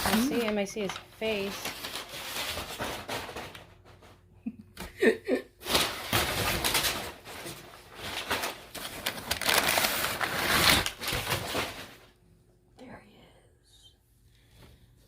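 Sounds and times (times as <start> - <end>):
cardboard and packing rustling: 0.0 - 4.3, 5.6 - 12.2.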